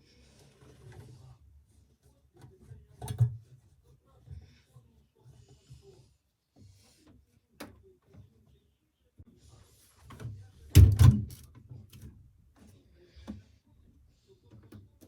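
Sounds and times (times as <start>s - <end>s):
washing machine knocking and rumbling: 10.1s - 11.5s.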